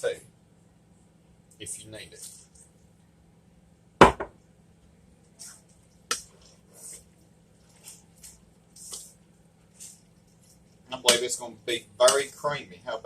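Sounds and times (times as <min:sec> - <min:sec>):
pasta squishing: 0:05.3 - 0:11.3.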